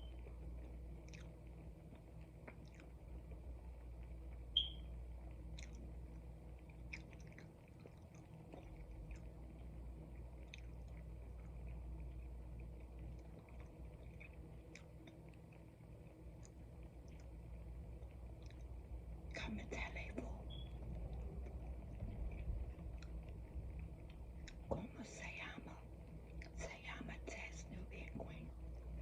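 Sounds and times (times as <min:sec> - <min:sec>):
steady low hum: 0:00.0 - 0:29.0
close chewing: 0:00.6 - 0:03.2, 0:05.5 - 0:17.4, 0:18.0 - 0:18.8, 0:21.0 - 0:24.7
wet mouth clicks: 0:01.0 - 0:01.4, 0:05.6 - 0:05.8, 0:06.8 - 0:09.4, 0:10.4 - 0:11.1, 0:14.1 - 0:15.6
high-pitched chirp: 0:04.6 - 0:04.8, 0:20.5 - 0:20.8.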